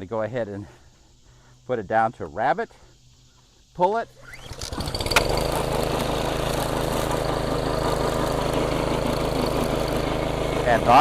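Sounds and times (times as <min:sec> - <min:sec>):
string trimmer engine starting and running: 0:04.2 - 0:11.0.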